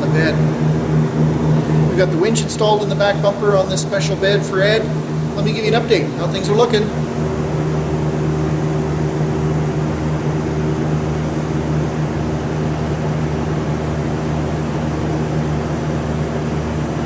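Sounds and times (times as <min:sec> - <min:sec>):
low mechanical hum: 0:00.0 - 0:17.0.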